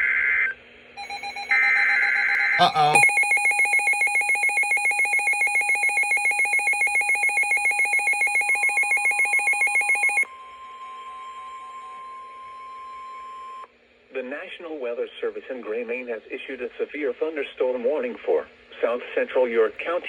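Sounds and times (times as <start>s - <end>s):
rapid electronic alarm beeping: 1.0s - 10.2s
steady warning alarm tone: 1.0s - 10.2s.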